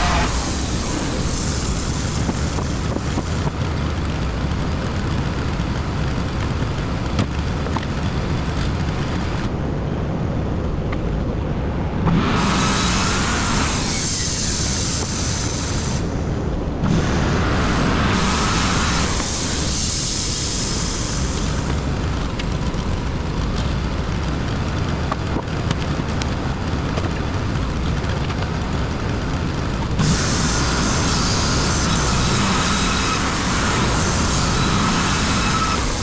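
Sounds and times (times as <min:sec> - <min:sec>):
band blade sawing log: 0:00.0 - 0:02.6
sawmill engine: 0:00.0 - 0:05.4, 0:12.1 - 0:22.7, 0:28.7 - 0:36.0.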